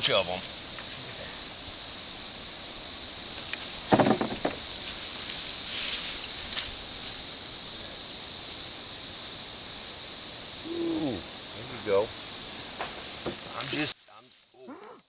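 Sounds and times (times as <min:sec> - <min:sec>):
insect chorus buzzing: 0:00.0 - 0:15.0
short hiss: 0:12.5 - 0:14.5.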